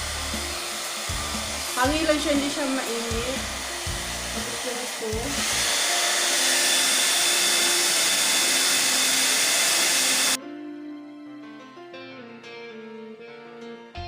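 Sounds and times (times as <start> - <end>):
hair dryer blowing with high whine: 0.0 - 10.4
background music: 0.0 - 14.0.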